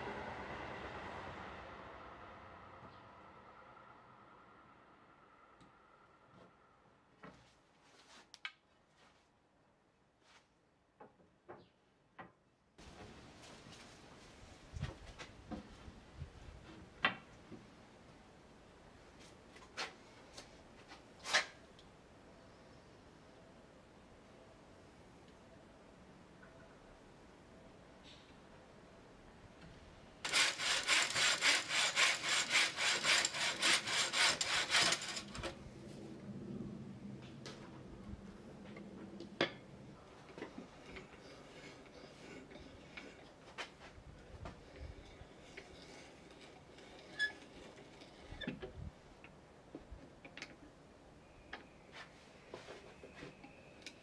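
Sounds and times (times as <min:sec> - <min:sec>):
hand saw cutting wood: 0:30.2 - 0:35.6.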